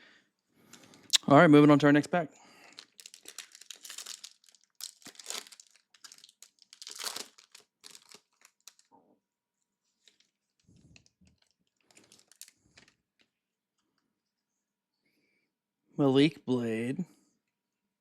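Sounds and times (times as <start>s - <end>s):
foil wrapper tearing and crinkling: 2.6s - 8.9s, 10.0s - 13.0s.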